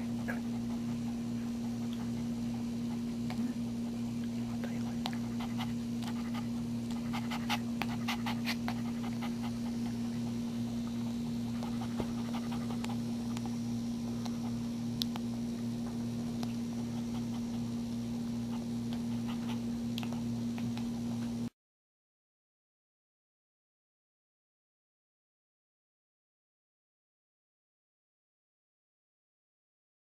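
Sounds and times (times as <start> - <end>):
dog panting: 0.0 - 14.8, 16.4 - 21.4
steady electrical hum: 0.0 - 21.5.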